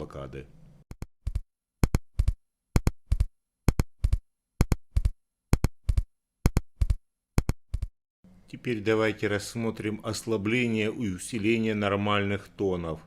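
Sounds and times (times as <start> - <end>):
artificial heartbeat clicks: 0.9 - 7.9.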